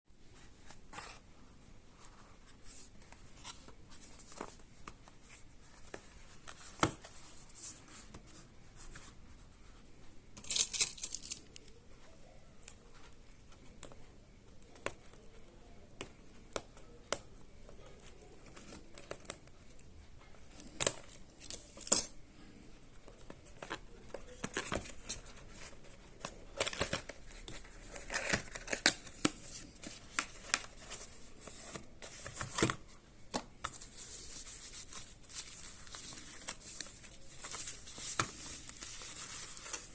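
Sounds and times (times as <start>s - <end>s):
packaging rustling: 23.4s - 32.9s, 33.6s - 39.9s.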